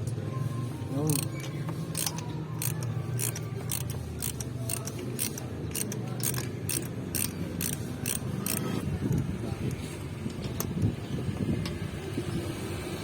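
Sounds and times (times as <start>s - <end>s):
ratchet wrench clicking: 1.1s - 9.8s.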